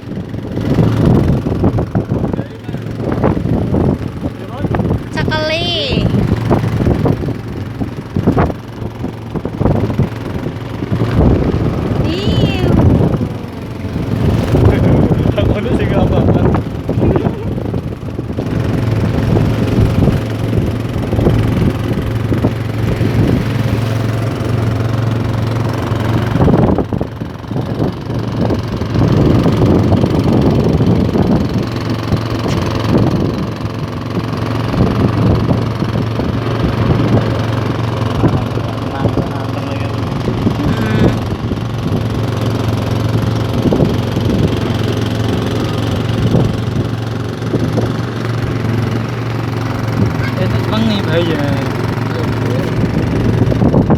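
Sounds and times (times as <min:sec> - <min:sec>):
boat engine running: 0:00.0 - 0:53.9.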